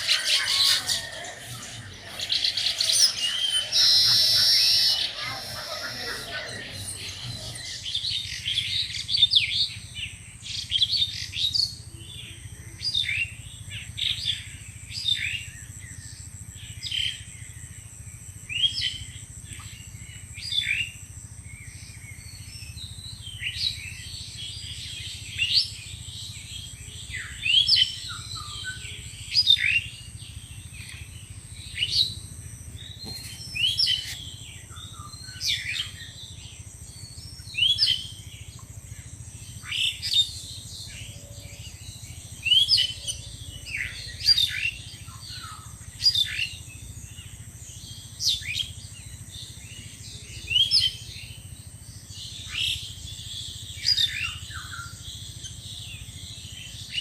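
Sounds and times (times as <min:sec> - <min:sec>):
low hum: 0:00.0 - 0:11.2
birds chirping: 0:00.0 - 0:15.5, 0:18.6 - 0:51.6
steady high whine: 0:00.0 - 0:57.0.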